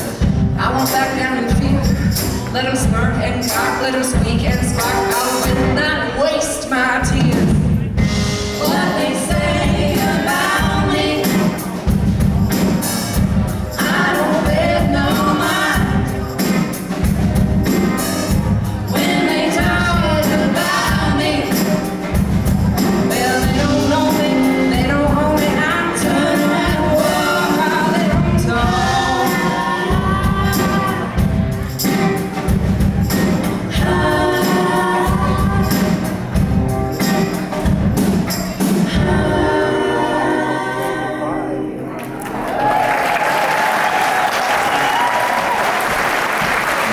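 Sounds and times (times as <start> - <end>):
band playing a steady beat: 0.0 - 40.6
women singing in harmony: 8.4 - 12.0, 13.7 - 16.4, 18.9 - 22.0, 23.0 - 31.3, 33.5 - 36.1, 38.8 - 42.0.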